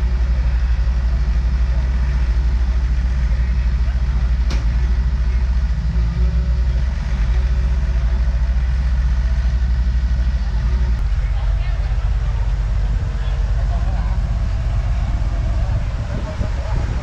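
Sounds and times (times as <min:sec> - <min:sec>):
excavator diesel engine throbbing: 0:00.0 - 0:17.0.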